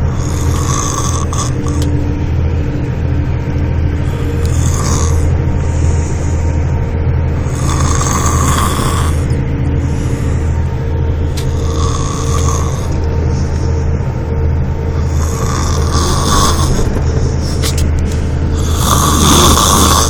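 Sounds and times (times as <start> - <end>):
man snoring loudly: 0.0 - 1.9, 4.0 - 5.3, 7.4 - 9.3, 11.5 - 13.0, 15.0 - 16.9, 18.6 - 20.0
steady low hum: 0.0 - 20.0.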